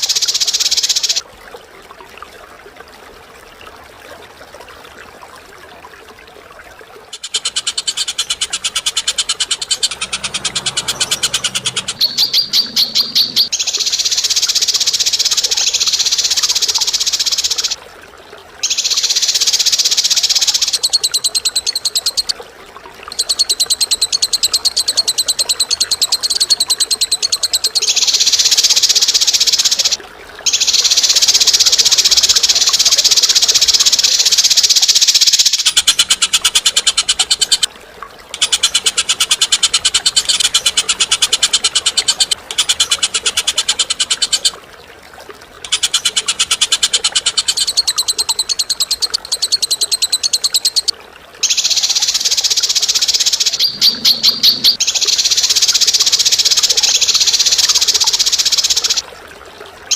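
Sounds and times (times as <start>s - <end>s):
bird chattering trill: 0.0s - 1.2s, 7.1s - 17.8s, 23.1s - 37.7s, 38.4s - 44.6s, 45.6s - 59.0s.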